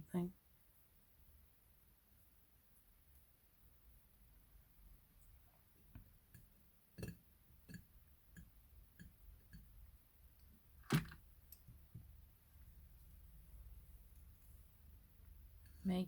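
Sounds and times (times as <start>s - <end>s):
tools tapping clay: 6.0s - 9.9s.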